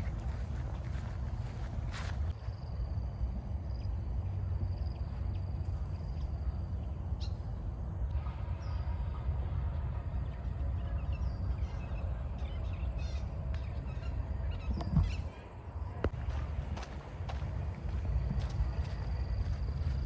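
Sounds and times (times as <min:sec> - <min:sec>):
wind rumbling on microphone: 0:00.0 - 0:20.0
faint bird calls chirping: 0:10.8 - 0:16.0.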